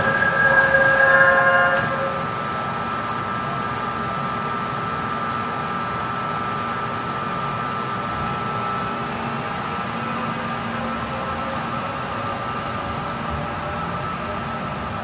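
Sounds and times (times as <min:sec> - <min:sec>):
subway train rumbling: 0:00.0 - 0:15.0.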